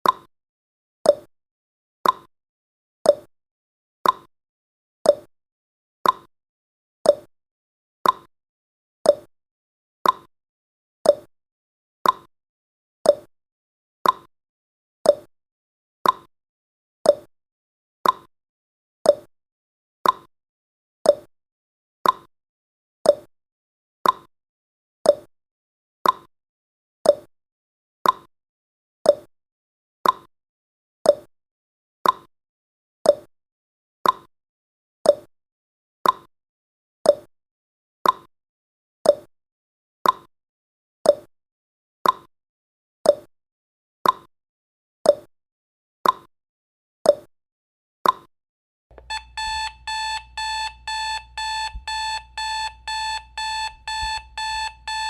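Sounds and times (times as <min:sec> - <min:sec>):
timer ticking: 0:48.9 - 0:55.0
electronic alarm beeps: 0:49.0 - 0:55.0.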